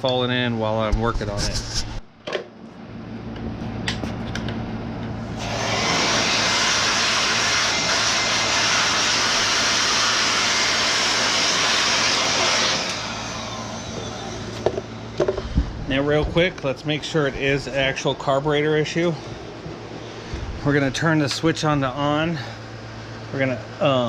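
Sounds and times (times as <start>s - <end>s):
handheld blower rushing air: 5.3s - 16.7s.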